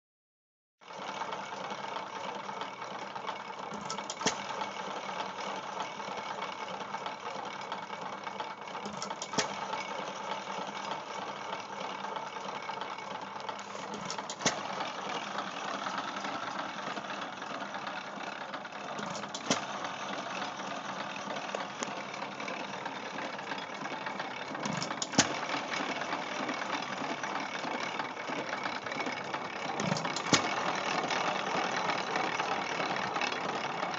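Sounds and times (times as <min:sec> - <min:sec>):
engine running and rattling: 0:00.8 - 0:33.9
engine firing pops: 0:03.8 - 0:04.5, 0:08.9 - 0:09.7, 0:13.7 - 0:14.8, 0:19.0 - 0:19.9, 0:24.6 - 0:25.6, 0:29.8 - 0:30.7.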